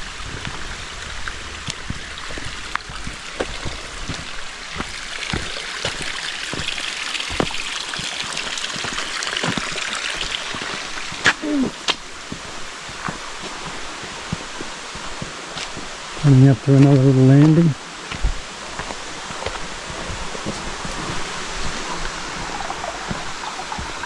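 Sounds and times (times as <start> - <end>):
creek trickling over rocks: 0.0 - 24.0
water drips: 1.2 - 15.8, 19.5 - 24.0.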